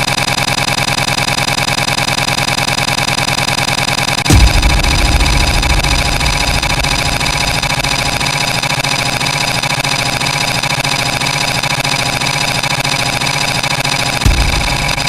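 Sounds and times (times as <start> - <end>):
low thump: 4.3 - 8.7, 14.3 - 15.0
loud engine-like drone: 4.3 - 8.8.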